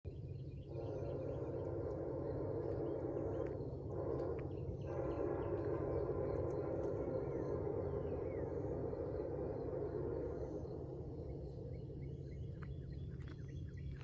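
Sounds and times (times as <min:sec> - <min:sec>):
small birds chirping: 0:00.1 - 0:14.0
distant locomotive horn: 0:00.6 - 0:11.0.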